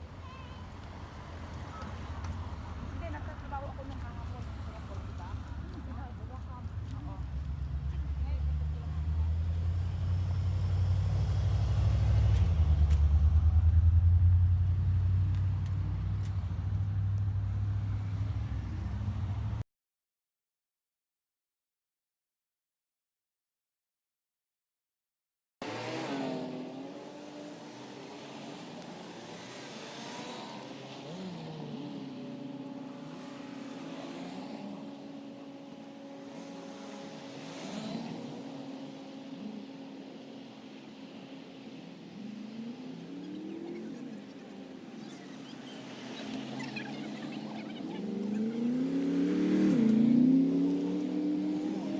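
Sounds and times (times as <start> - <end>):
engine humming: 0.0 - 19.6.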